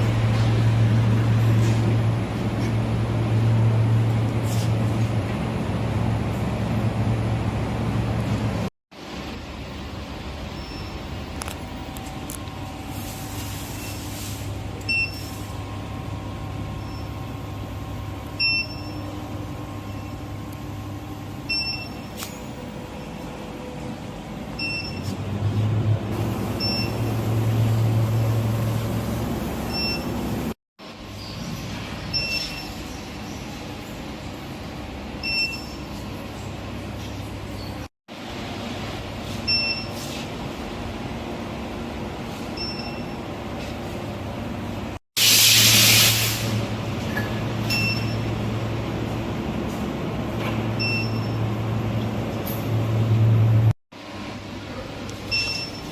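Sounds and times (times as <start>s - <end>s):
furnace machine hum: 0.0s - 55.9s
double-pitched electronic beep: 18.4s - 19.0s, 26.6s - 27.2s, 47.7s - 48.3s, 55.3s - 55.9s
loud hiss: 45.2s - 46.7s.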